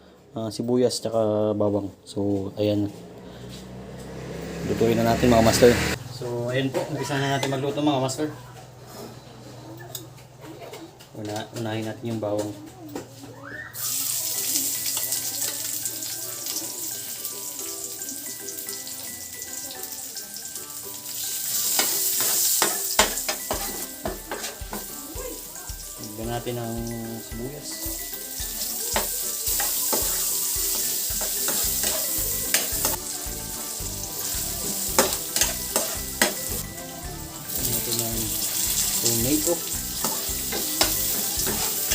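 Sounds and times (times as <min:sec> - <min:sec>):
light background music: 0:11.0 - 0:41.9
garlic sizzling in a pan: 0:13.8 - 0:41.9.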